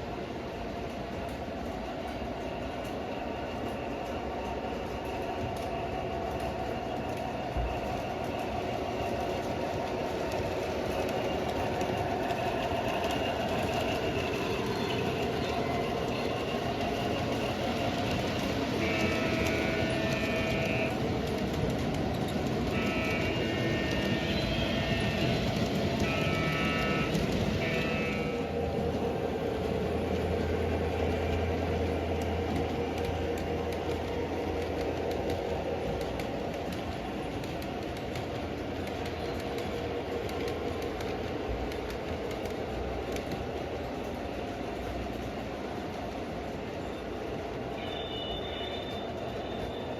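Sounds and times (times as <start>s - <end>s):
wheels on rails: 0.0s - 49.9s
model train motor hum: 12.7s - 28.6s.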